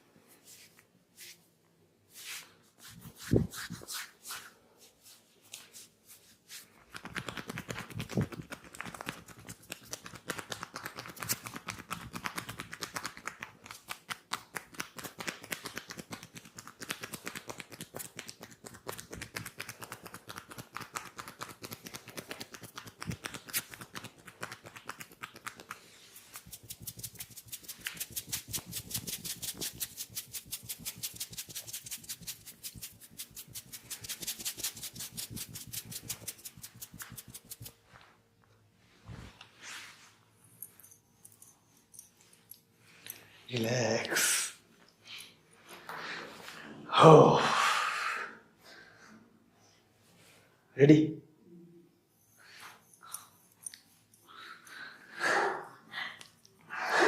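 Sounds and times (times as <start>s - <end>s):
hands slapping during massage: 6.5s - 37.8s.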